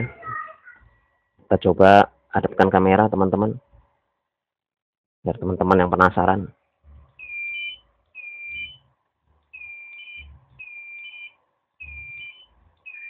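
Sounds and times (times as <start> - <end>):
two-step electronic beep: 7.2 - 8.8, 9.6 - 13.0.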